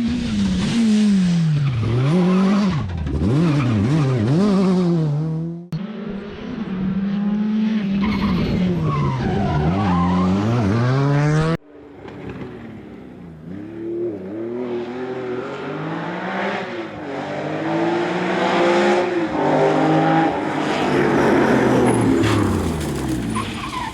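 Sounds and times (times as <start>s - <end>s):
rally car engines revving: 0.0s - 23.9s
tyres sliding: 20.2s - 23.9s.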